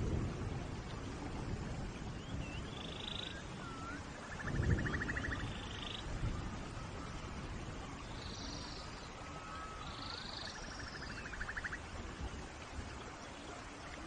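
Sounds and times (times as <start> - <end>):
steady rain hiss: 0.0 - 14.0
thin gliding whistle: 2.6 - 11.7.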